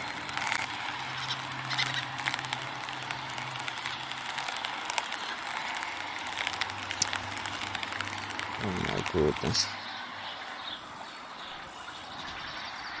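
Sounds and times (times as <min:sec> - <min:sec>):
small clicks: 0:00.0 - 0:09.8
distant road traffic: 0:00.0 - 0:13.0.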